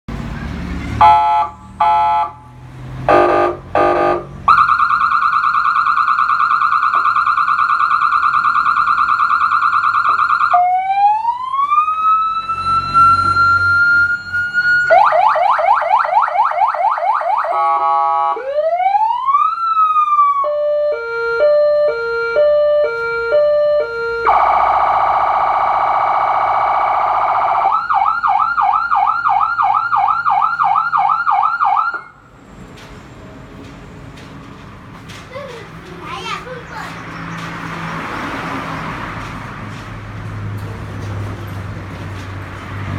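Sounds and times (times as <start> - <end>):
electronic vehicle siren: 1.0 - 2.4, 3.1 - 32.2.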